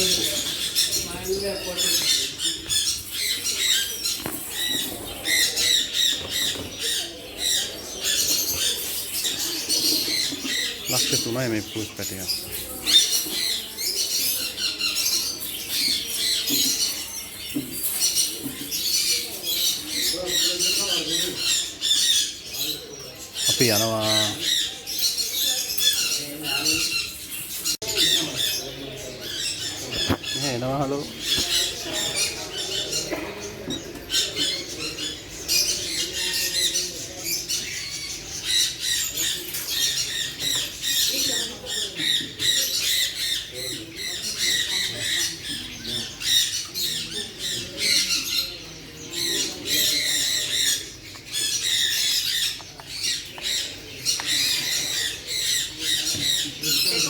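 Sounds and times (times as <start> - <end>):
caged birds chirping and squawking: 0.0 - 57.0.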